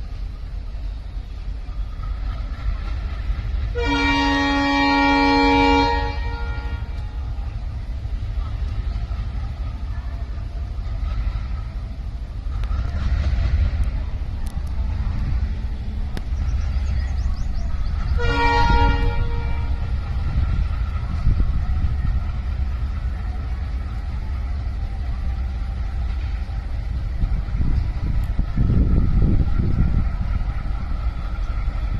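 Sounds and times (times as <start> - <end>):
diesel locomotive engine rumble: 0.0 - 31.9
locomotive horn: 3.6 - 7.3, 18.0 - 20.2.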